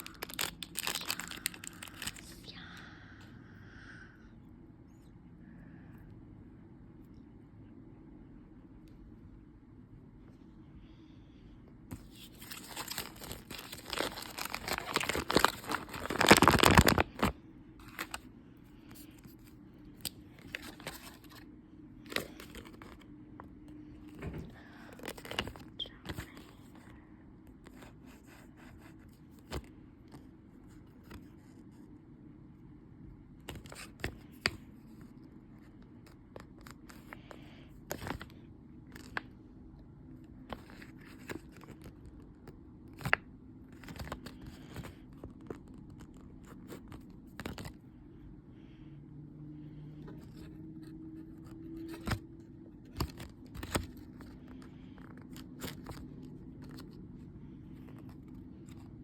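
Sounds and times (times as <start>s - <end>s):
packaging tearing and crinkling: 0.0s - 2.4s, 12.1s - 18.2s.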